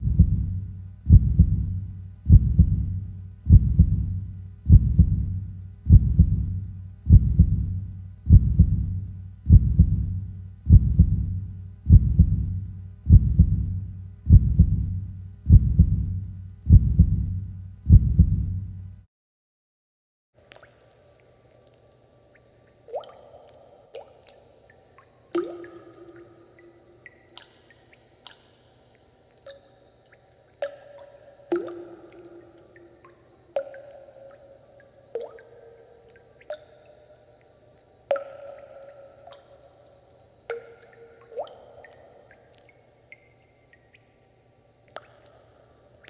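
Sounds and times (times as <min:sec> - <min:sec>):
heartbeat thumps: 0:00.0 - 0:18.6.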